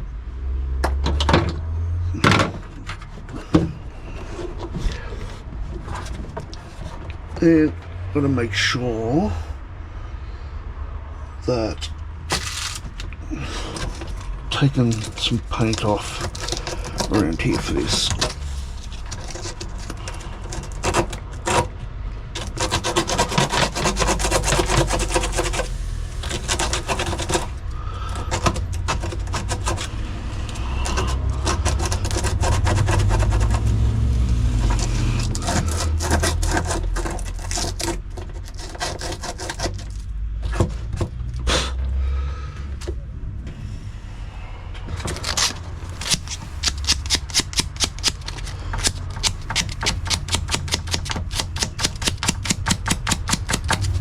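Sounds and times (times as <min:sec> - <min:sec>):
scraping paint off metal: 0:11.6 - 0:41.6, 0:44.9 - 0:54.0.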